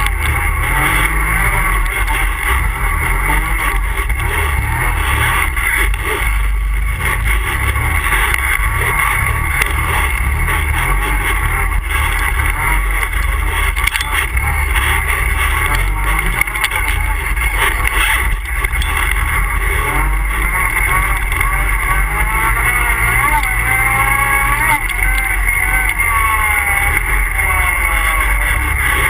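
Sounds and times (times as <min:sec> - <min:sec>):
atv engine running: 0:00.0 - 0:29.0.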